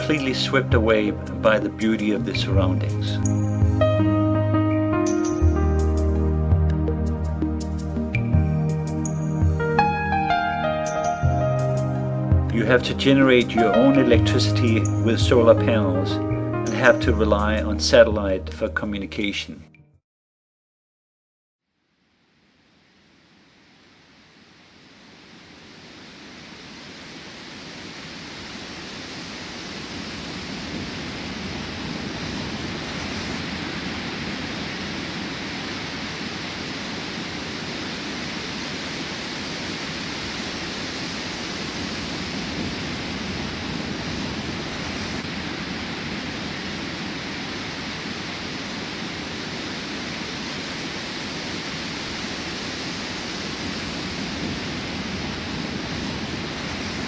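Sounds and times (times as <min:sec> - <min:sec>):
water rushing: 0:00.0 - 0:03.8, 0:23.3 - 0:57.0.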